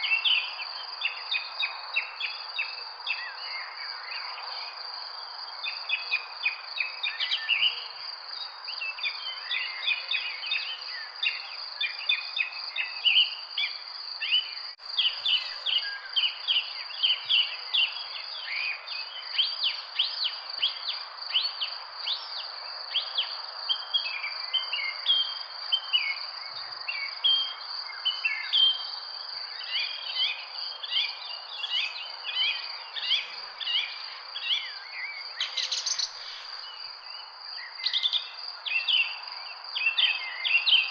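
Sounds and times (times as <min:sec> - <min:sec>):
insect drone: 0:00.0 - 0:40.8
birds chirping and singing: 0:08.9 - 0:22.4, 0:29.6 - 0:40.9.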